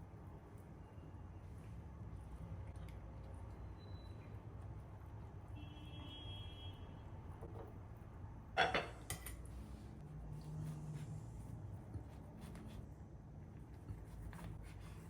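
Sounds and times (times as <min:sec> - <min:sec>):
dish or utensil clinking: 0:08.6 - 0:09.4.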